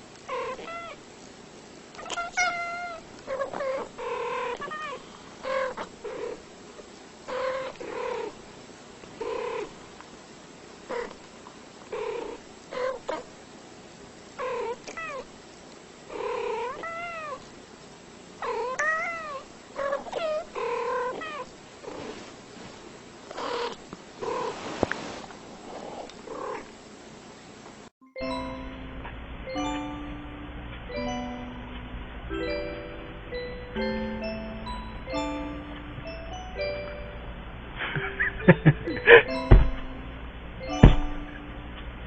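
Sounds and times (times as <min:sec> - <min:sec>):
cat meowing: 0:02.0 - 0:05.9.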